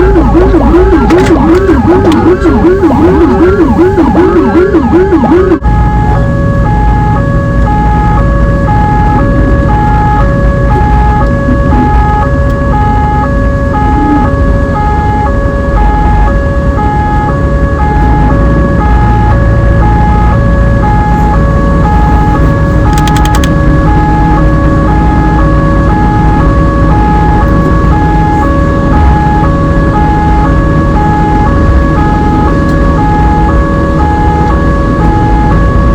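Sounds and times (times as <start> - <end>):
ambulance siren: 0.0 - 35.9
low steady rumble: 0.0 - 35.9.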